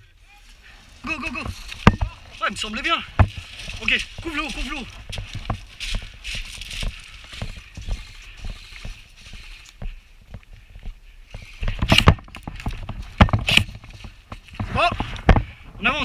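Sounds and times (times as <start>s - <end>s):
footsteps on rough ground: 0.0s - 16.0s
scuffing and rustling: 0.9s - 11.6s.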